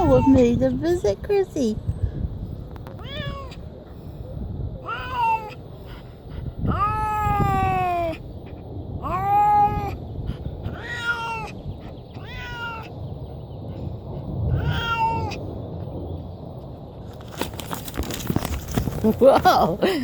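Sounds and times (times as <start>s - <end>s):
cat meowing: 0.0s - 0.6s, 3.0s - 3.7s, 4.8s - 5.6s, 6.7s - 8.2s, 9.0s - 10.0s, 10.6s - 13.0s, 14.5s - 15.4s.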